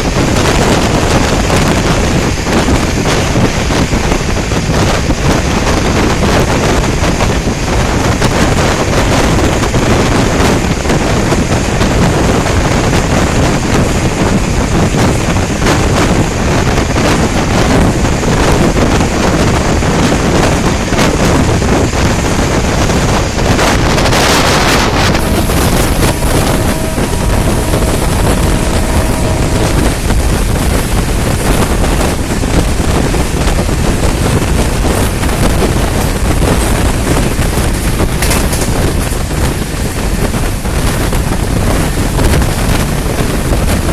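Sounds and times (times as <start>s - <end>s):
train running at speed: 0.0s - 43.9s
wind noise on microphone: 0.0s - 43.9s
two-tone locomotive horn: 23.6s - 37.6s.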